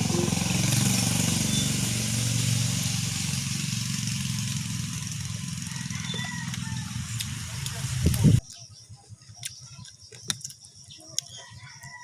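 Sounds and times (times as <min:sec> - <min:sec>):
vehicle engine running: 0:00.0 - 0:08.9.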